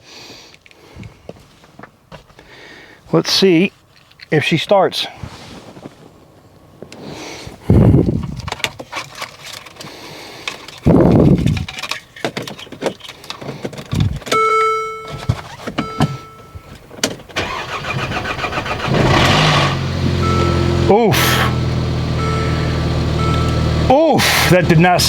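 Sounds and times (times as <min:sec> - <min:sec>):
dashboard chime beeping: 0:14.3 - 0:16.7, 0:20.2 - 0:24.2
engine cranking and starting: 0:17.3 - 0:24.6.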